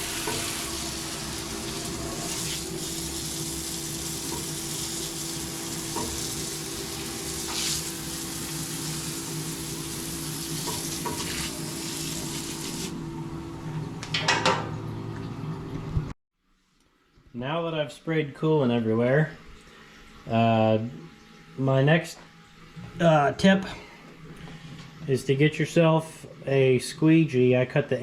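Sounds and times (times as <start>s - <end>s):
air blow gun hissing: 0.0s - 12.9s.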